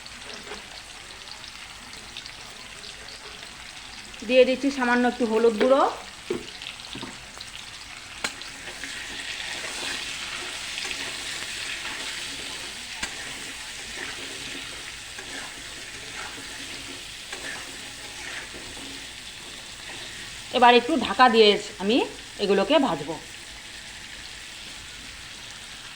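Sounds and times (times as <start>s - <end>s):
spatula stirring: 0.0s - 0.9s, 5.4s - 25.5s
vegetables sizzling in oil: 0.0s - 25.9s
spatula tapping pan: 8.2s - 20.4s.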